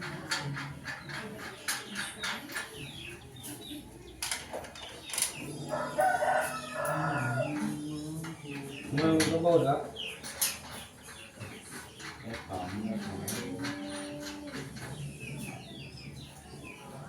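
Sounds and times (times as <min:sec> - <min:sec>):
rooster crowing: 0:05.7 - 0:07.6.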